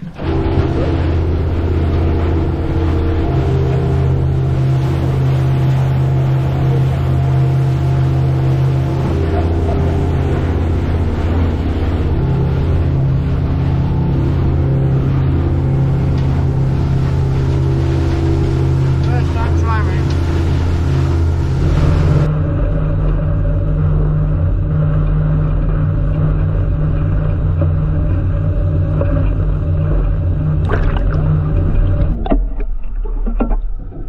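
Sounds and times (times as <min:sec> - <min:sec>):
boat engine droning: 0:00.0 - 0:34.0.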